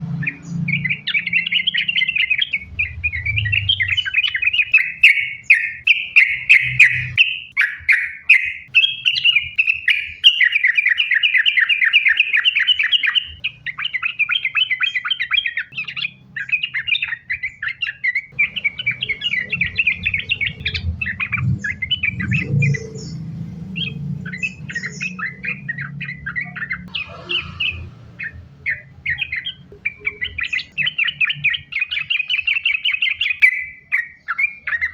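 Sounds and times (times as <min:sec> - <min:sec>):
low rumble: 0:00.0 - 0:04.7, 0:18.3 - 0:29.0
bird singing chattering song: 0:00.0 - 0:34.9.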